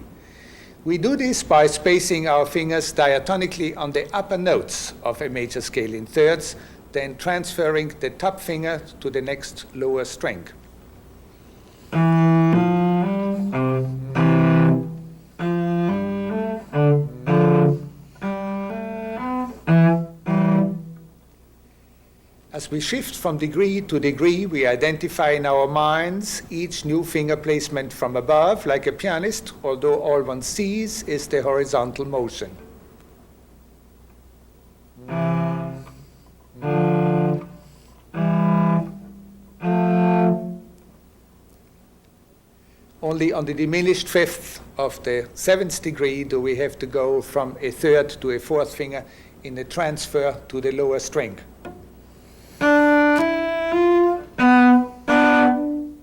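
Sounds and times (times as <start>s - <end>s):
cello playing double stops: 11.7s - 21.2s, 35.0s - 40.9s, 51.6s - 56.0s.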